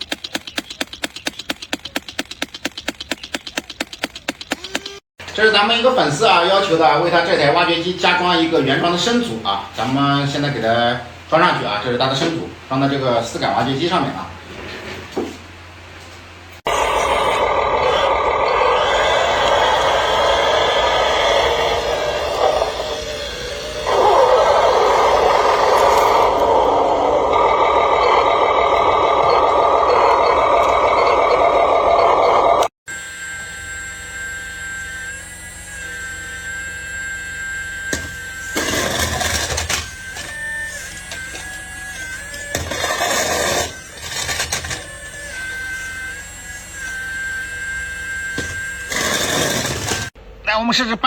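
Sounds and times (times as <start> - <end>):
small electric motor whining: 0.0 - 5.0, 16.6 - 50.2
remote-control excavator engine drone: 0.0 - 9.3, 16.7 - 50.2.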